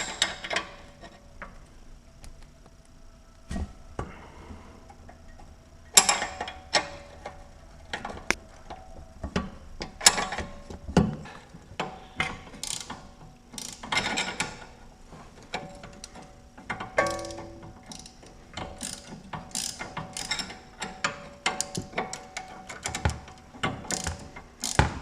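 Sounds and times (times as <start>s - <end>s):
ratchet wrench clicking: 12.6s - 13.0s, 13.6s - 14.5s, 16.7s - 23.0s, 23.9s - 25.0s.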